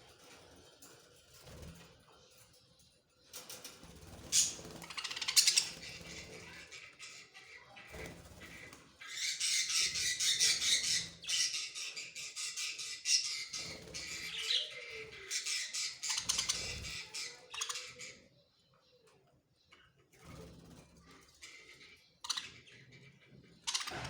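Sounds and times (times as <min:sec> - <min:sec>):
budgerigars chattering and squawking: 0:03.3 - 0:18.4, 0:21.1 - 0:24.0.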